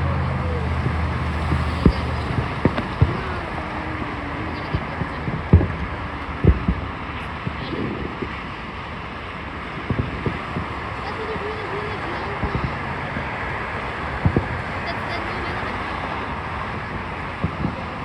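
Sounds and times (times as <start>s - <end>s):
crowd noise: 0.0s - 18.0s
wind rumble: 0.0s - 18.0s
fireworks bangs: 0.5s - 18.0s.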